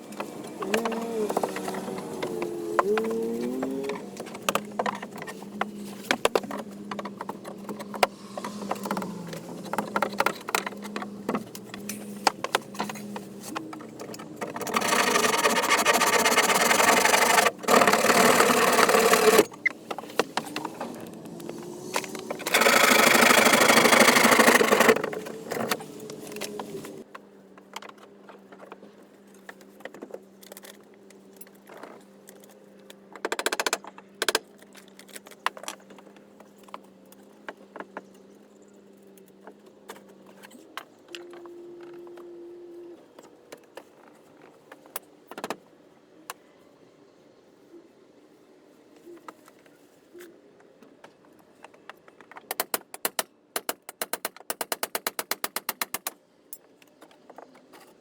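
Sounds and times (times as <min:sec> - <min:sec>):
handheld power tool whining: 0:08.7 - 0:19.6, 0:21.9 - 0:26.6.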